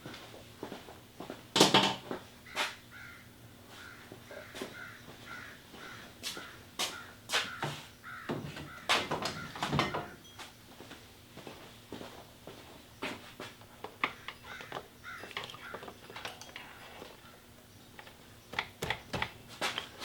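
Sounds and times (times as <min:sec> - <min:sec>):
screwdriver prying plastic box: 0:18.0 - 0:20.0.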